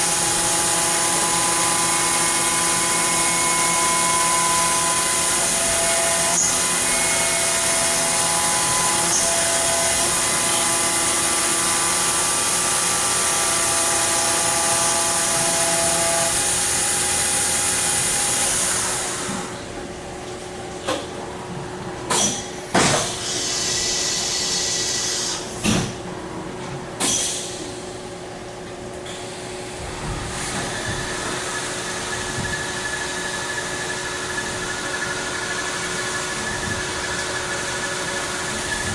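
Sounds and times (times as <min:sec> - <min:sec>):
machining center running: 0:27.9 - 0:38.9.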